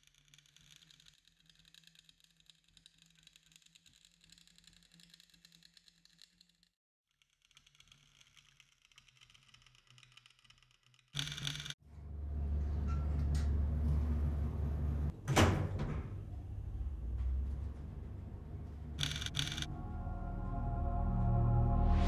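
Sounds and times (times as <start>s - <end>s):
low hum: 11.8s - 22.0s.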